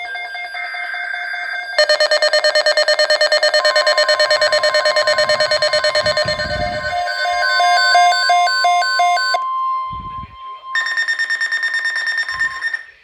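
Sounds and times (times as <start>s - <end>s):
harsh electronic beeping: 0.0s - 13.0s
alternating alert tones: 1.8s - 9.4s
steady high tone: 1.8s - 10.8s
faint low rumble: 3.4s - 8.3s.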